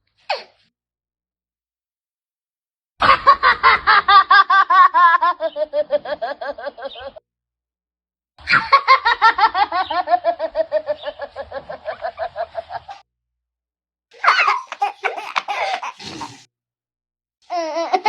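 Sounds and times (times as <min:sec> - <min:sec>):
baby laughing: 0:14.2 - 0:16.5.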